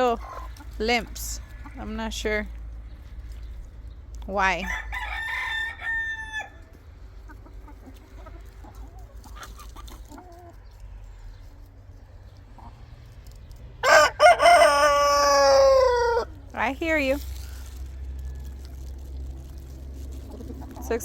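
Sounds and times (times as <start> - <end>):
rooster crowing: 4.6 - 6.6, 13.8 - 16.3.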